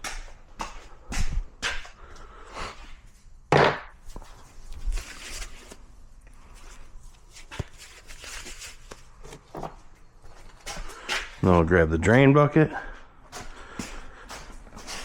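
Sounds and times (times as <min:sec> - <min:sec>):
shuffling and scuffs: 0:04.0 - 0:11.6, 0:12.6 - 0:15.0.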